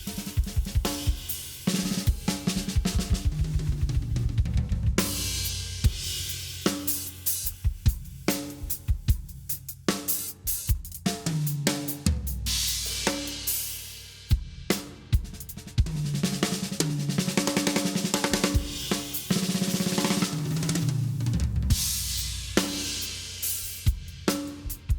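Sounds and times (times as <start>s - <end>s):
drum kit groove: 0.0s - 24.9s
fast tom fills: 1.7s - 6.4s.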